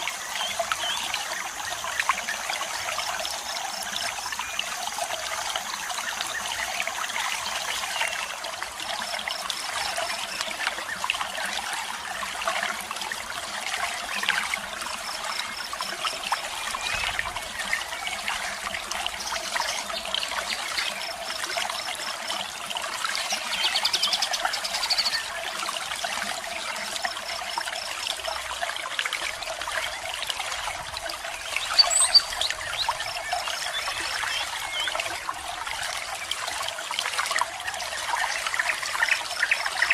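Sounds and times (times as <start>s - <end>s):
small birds chirping: 31.6s - 33.0s.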